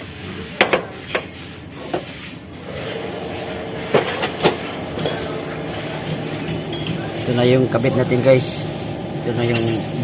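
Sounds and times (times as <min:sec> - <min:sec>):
hand tools knocking: 0:03.9 - 0:07.3.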